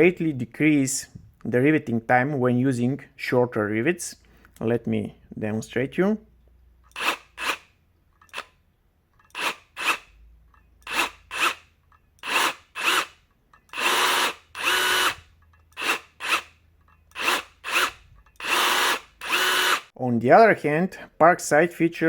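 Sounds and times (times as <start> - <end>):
rivet gun motor whirring: 6.8 - 8.6, 9.2 - 10.2, 10.8 - 19.9.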